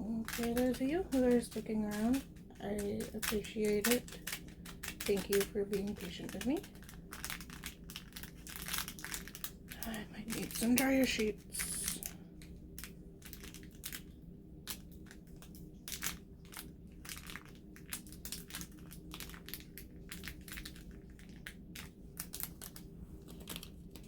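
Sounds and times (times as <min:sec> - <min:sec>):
faint steady hum: 0:00.0 - 0:24.0
plastic bags crinkling: 0:00.0 - 0:24.0
plastic pieces clicking: 0:00.2 - 0:12.1.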